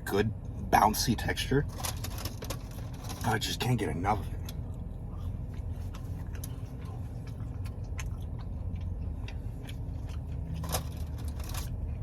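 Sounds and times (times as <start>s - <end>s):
steady low hum: 0.0s - 12.0s
close chewing: 4.4s - 12.0s.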